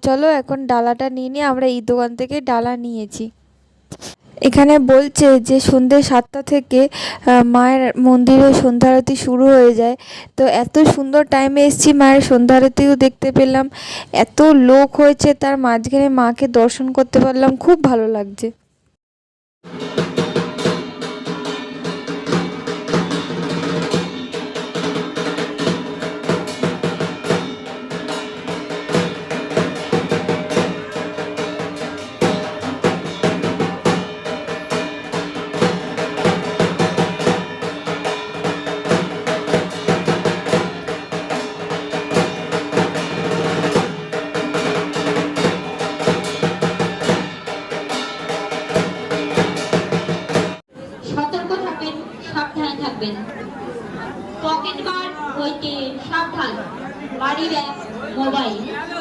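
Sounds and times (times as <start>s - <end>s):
fast drumming: 19.7s - 50.6s
sustained ringing tones: 20.9s - 50.3s.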